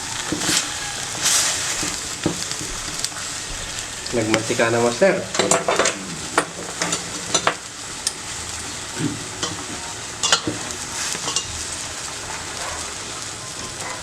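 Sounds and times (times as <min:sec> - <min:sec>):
meat sizzling in hot oil: 0:00.0 - 0:14.0
stirring scrapes in pan: 0:00.2 - 0:03.1.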